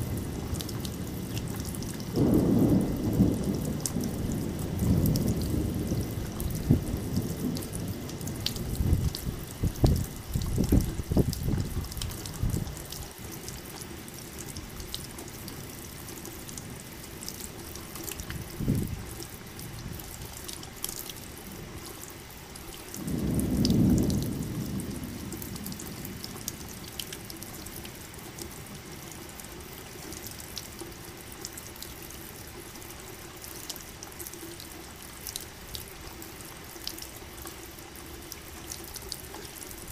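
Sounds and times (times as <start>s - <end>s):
thunder rumbling: 0.0s - 12.9s, 17.8s - 20.1s, 22.9s - 27.7s
steady rain: 0.0s - 39.9s
water dripping: 0.0s - 39.9s
thunder clap: 2.1s - 7.6s, 23.0s - 26.3s.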